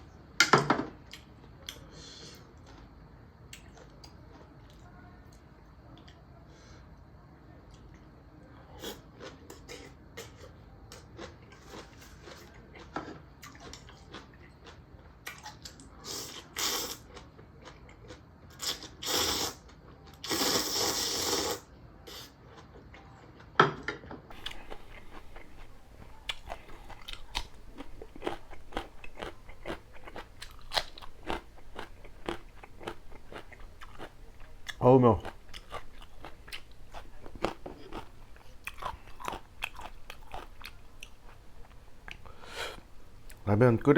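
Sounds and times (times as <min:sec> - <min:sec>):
crunchy chewing: 0:08.8 - 0:23.5, 0:24.3 - 0:43.5
slurping noodles: 0:18.6 - 0:19.6, 0:20.2 - 0:22.3.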